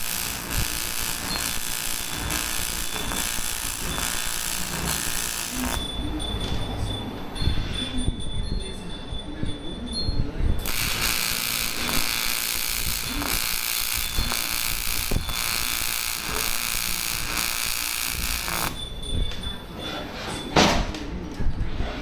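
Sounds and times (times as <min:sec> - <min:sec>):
welding arc buzzing hiss: 0:00.0 - 0:05.9, 0:10.6 - 0:18.9.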